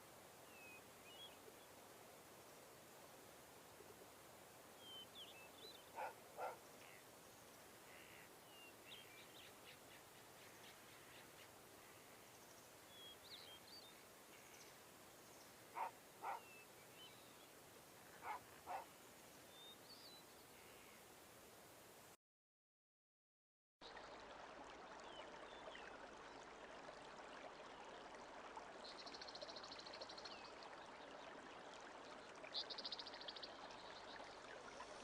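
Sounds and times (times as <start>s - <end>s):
soft steady hiss: 0.0s - 22.2s
small birds chirping: 4.8s - 21.0s.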